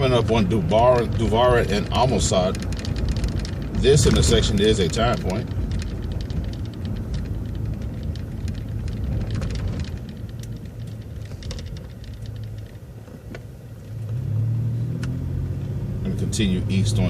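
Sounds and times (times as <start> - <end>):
light rattles and clicks: 0.0 - 14.3
bus engine running: 0.0 - 17.0.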